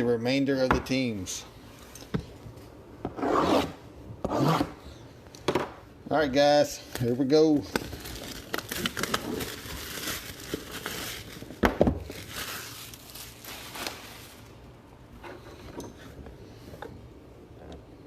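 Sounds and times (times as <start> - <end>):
plastic wrapping crinkling and tearing: 7.0 - 14.6.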